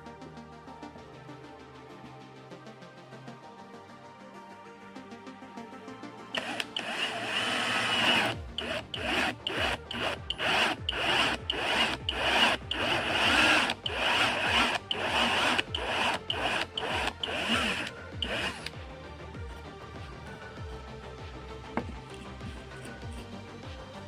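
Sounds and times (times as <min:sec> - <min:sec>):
hand tool stroking wood: 0:06.4 - 0:18.7.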